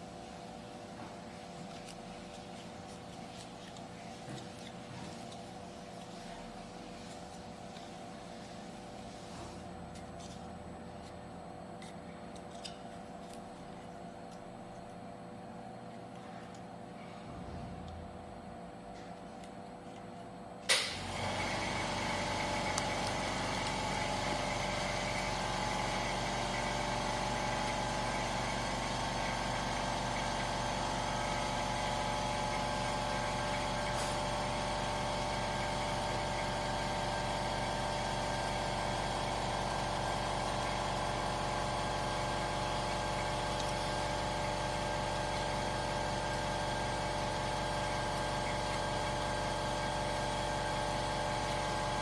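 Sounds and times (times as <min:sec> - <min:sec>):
cutting machine humming and whining: 0:20.9 - 0:52.0.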